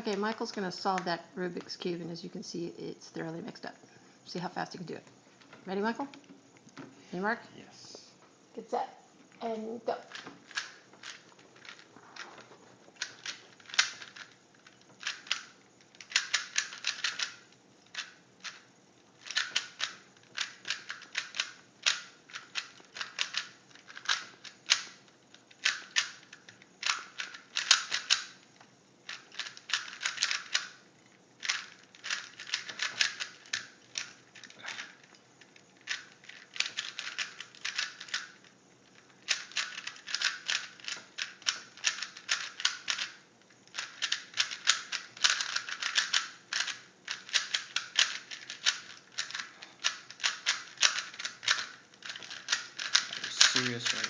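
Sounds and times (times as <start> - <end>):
rubik's cube clicking: 10.1 - 11.8, 13.0 - 28.4, 29.0 - 30.8, 31.4 - 54.0.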